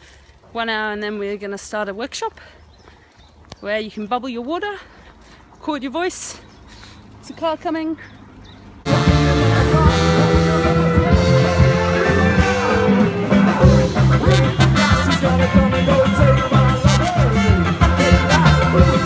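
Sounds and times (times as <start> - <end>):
upbeat ska band music: 8.9 - 19.0.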